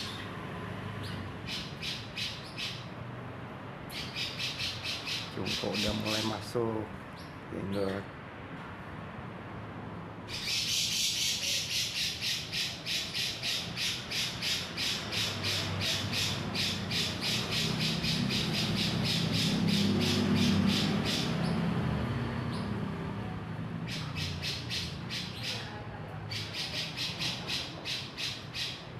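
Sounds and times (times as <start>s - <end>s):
bird harsh squawking calls: 1.1s - 2.9s, 3.9s - 6.4s, 10.3s - 21.6s, 23.8s - 25.7s, 26.3s - 28.9s.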